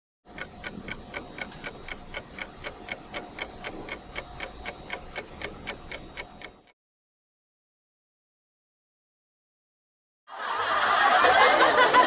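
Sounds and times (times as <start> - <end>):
rapid even ticking: 0.3 - 6.7.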